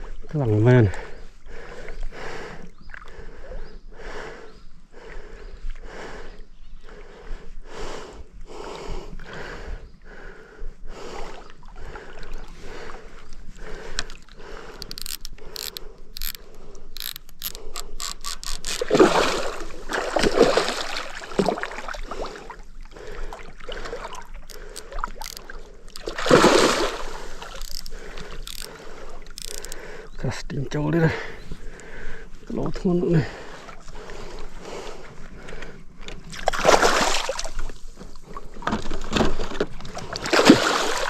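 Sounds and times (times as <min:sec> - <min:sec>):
fishing reel clicking: 0:13.9 - 0:19.0, 0:24.4 - 0:26.0, 0:27.0 - 0:29.9.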